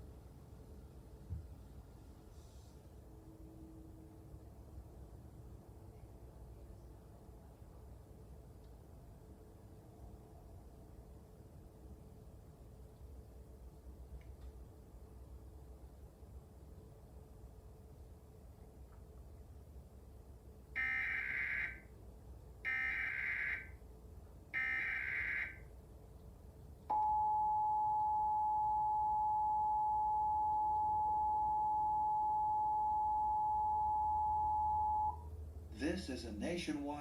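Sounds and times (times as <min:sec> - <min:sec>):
two-tone attention signal: 0:26.9 - 0:35.2.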